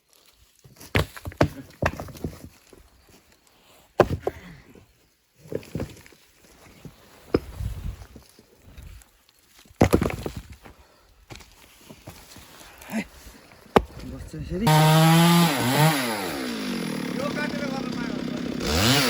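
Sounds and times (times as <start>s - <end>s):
rustling and shuffling: 0.0s - 14.6s.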